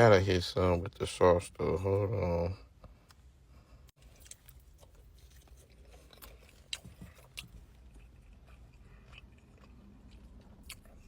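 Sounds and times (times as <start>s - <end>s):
low steady hum: 0.0s - 11.0s
person chewing: 4.0s - 11.0s.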